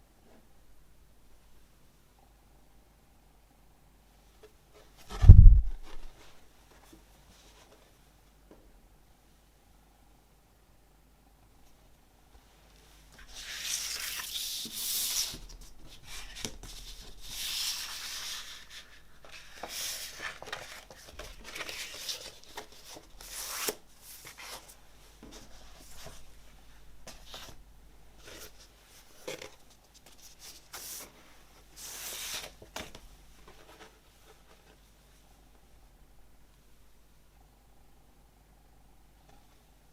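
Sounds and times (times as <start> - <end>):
cardboard and paper rustling: 13.2 - 26.2.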